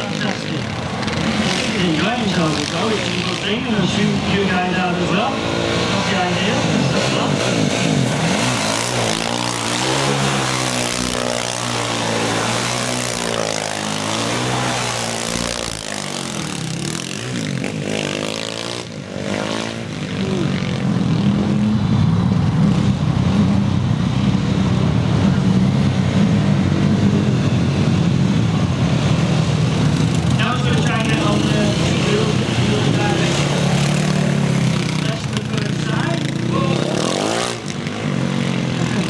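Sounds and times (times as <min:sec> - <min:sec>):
quad bike engine revving: 0:00.0 - 0:39.0.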